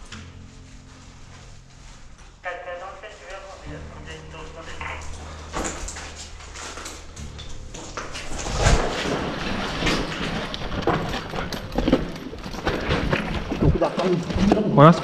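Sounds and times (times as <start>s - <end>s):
crunching footsteps: 0.0s - 15.0s
gear rattling: 5.5s - 14.7s.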